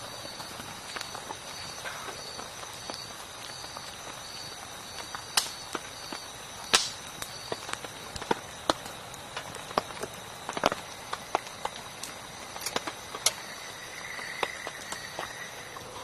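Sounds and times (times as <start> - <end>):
sharp cracks and snaps: 5.0 - 13.5.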